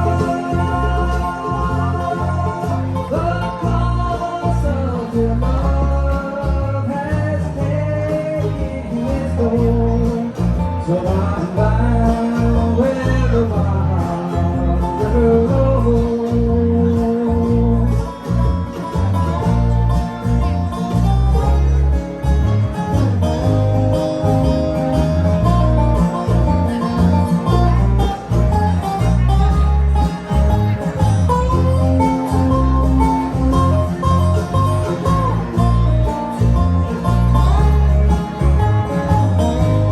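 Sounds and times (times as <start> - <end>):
bluegrass band playing: 0.0 - 39.9.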